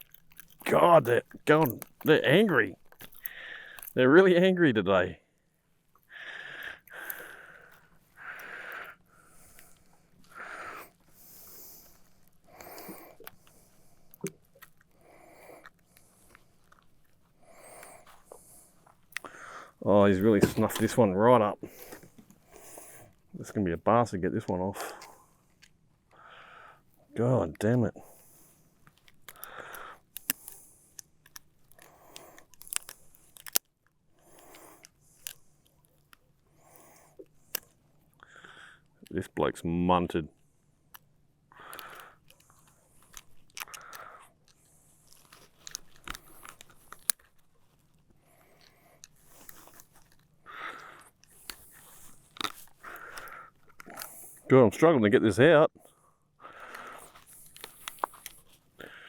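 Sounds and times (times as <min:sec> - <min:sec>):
fishing hooks clicking: 0:00.0 - 0:04.0, 0:06.5 - 0:16.8, 0:29.0 - 0:36.1
small clicks and handling noises: 0:00.0 - 0:04.4, 0:05.4 - 0:23.6, 0:24.4 - 0:39.3, 0:40.4 - 0:54.6, 0:55.9 - 0:59.0
person breathing: 0:03.2 - 0:04.0, 0:06.0 - 0:20.9, 0:21.6 - 0:23.3, 0:24.8 - 0:27.1, 0:27.9 - 0:33.4, 0:34.1 - 0:35.8, 0:36.5 - 0:39.0, 0:41.5 - 0:54.5, 0:55.8 - 0:59.0.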